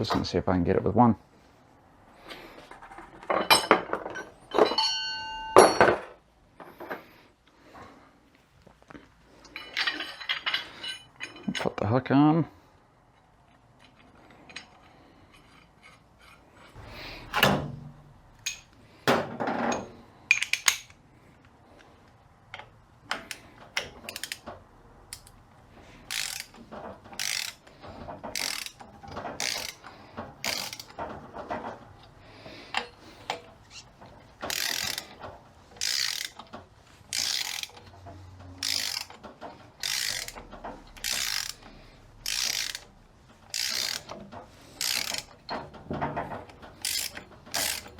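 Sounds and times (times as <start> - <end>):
metal knocks and clinks: 3.1 - 7.0, 9.4 - 11.7, 18.4 - 20.9
ratchet clicking: 23.3 - 24.4, 26.1 - 26.6, 27.2 - 27.7, 28.3 - 28.8, 29.4 - 29.8, 30.4 - 31.0, 34.5 - 35.2, 35.8 - 36.4, 37.1 - 37.9, 38.6 - 39.2, 39.8 - 42.9, 43.5 - 44.2, 44.8 - 45.4, 46.8 - 47.9.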